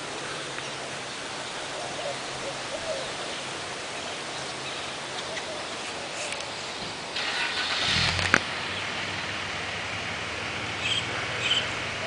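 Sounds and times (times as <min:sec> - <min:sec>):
outdoor background hiss: 0:00.0 - 0:12.0
bird giving low calls: 0:01.5 - 0:06.3, 0:10.7 - 0:12.0.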